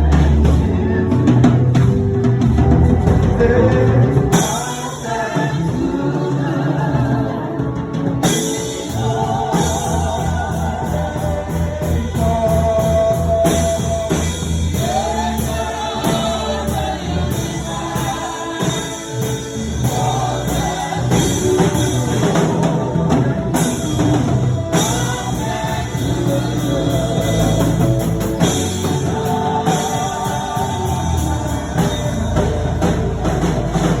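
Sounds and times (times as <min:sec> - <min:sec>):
drum kit beat: 0:00.0 - 0:34.0
gospel singing: 0:00.0 - 0:34.0.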